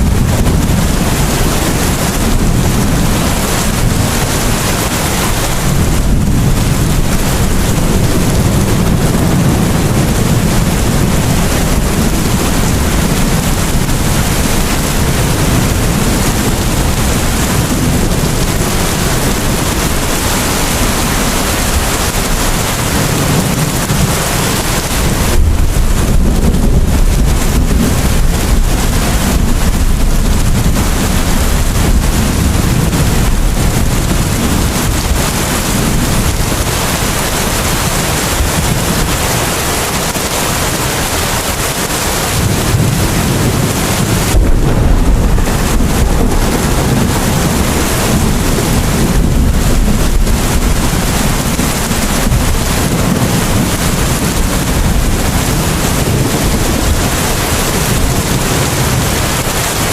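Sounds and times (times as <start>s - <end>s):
low rumble: 0.0s - 39.2s, 42.4s - 58.1s
steady rain hiss: 0.0s - 59.9s.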